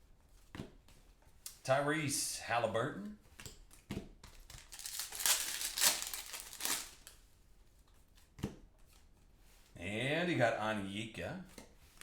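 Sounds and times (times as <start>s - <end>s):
foil wrapper crinkling and tearing: 4.4s - 7.2s.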